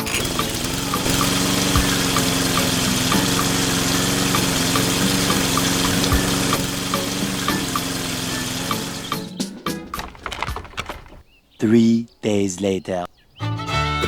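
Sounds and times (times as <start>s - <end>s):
light regular ticking: 0.0s - 9.3s
small motor humming: 0.0s - 9.4s.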